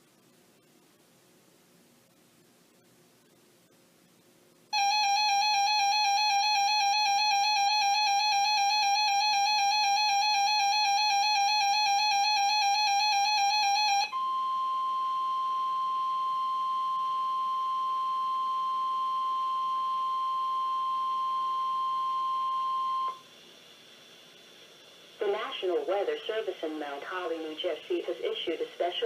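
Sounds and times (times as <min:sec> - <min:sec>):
steady high alarm tone: 0:04.7 - 0:23.2.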